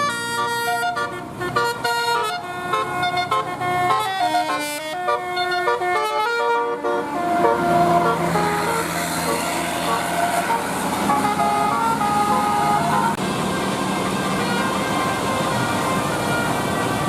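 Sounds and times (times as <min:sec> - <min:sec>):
musical air horn playing a tune: 0:00.0 - 0:17.0.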